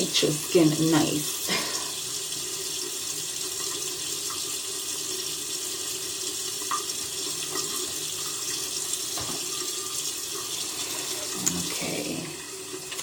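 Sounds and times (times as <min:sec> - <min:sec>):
tap running into sink: 0:06.5 - 0:10.1.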